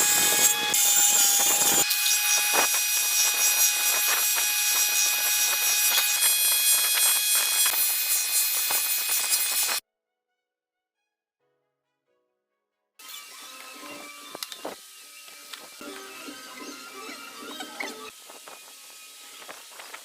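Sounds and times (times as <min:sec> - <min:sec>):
power tool whining: 0:00.0 - 0:09.8, 0:13.0 - 0:20.0.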